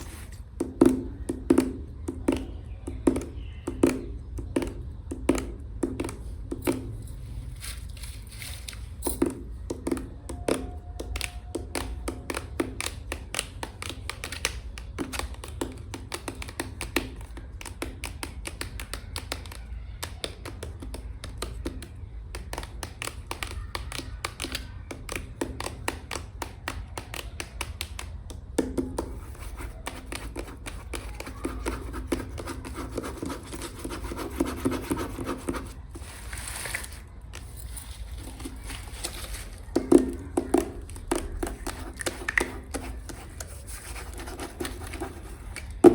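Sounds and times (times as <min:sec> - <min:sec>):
fingernails tapping and scratching: 0:08.4 - 0:45.9.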